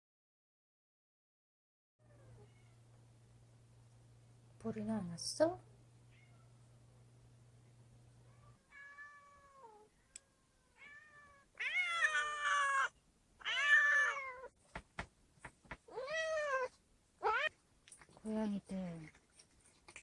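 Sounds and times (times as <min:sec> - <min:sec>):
cats meowing: 0:02.0 - 0:02.8, 0:08.3 - 0:14.6, 0:15.8 - 0:17.6
short sharp taps: 0:14.6 - 0:15.9.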